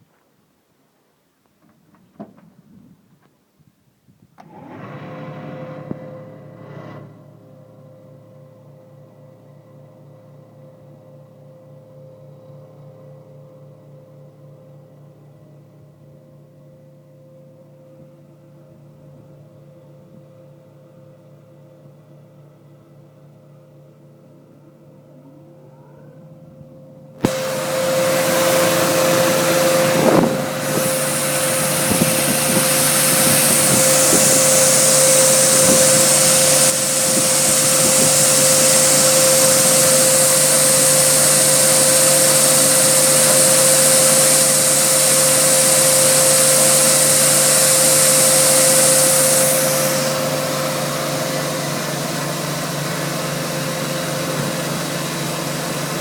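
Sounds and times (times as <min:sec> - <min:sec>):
extraction fan hissing: 0:27.2 - 0:56.0
machine switched on: 0:27.2 - 0:56.0
motor humming: 0:27.2 - 0:56.0.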